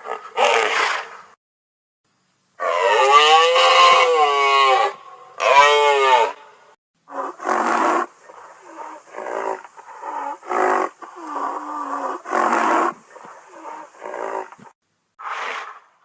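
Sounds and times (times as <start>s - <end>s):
faint steady hiss: 2.1s - 2.6s
rhinoceros calling: 2.6s - 6.4s.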